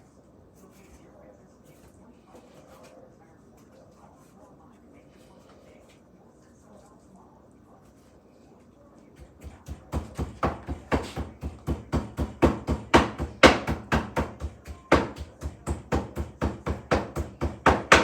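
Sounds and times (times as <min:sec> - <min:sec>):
knife chopping on cutting board: 0:09.2 - 0:18.0.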